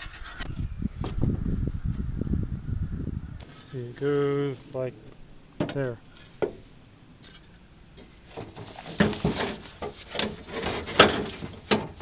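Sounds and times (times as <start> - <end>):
knocks and scraping rubs on metal: 7.2 - 12.0.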